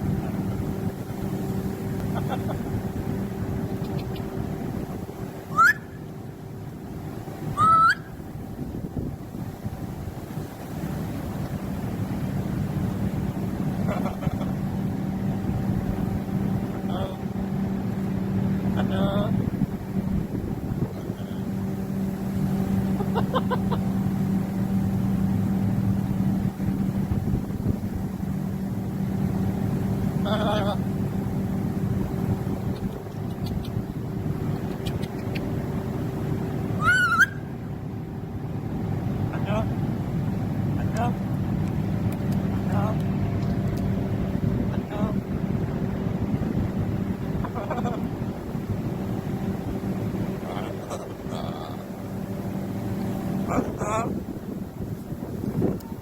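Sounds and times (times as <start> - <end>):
low mechanical hum: 0.0 - 56.0
macaw calling: 5.5 - 6.0, 7.6 - 8.2, 36.8 - 37.4.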